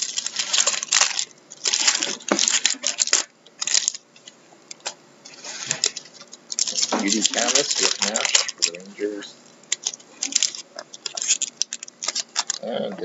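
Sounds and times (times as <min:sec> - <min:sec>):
trading cards rustling and scraping: 0:00.0 - 0:13.0.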